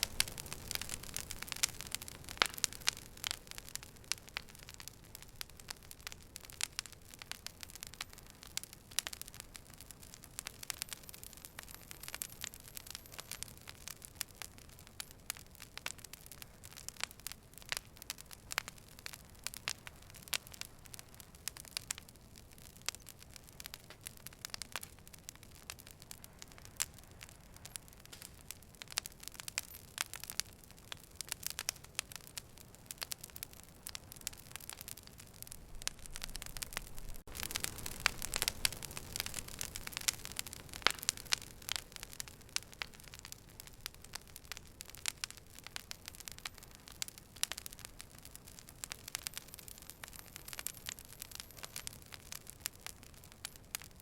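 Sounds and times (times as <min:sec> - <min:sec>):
fire crackling and snapping: 0:00.0 - 0:54.0
soft hiss of fire: 0:00.0 - 0:54.0.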